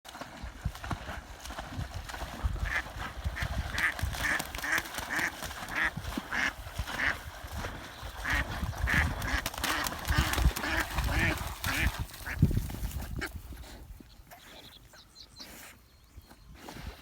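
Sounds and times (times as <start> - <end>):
duck quacking: 2.6 - 7.2, 8.2 - 12.4.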